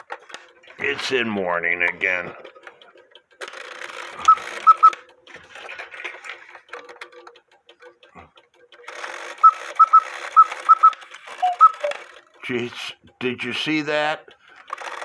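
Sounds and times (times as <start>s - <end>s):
clock mechanism whirring: 0.0s - 15.0s
clock bellows chirping: 3.6s - 5.1s, 8.8s - 12.7s.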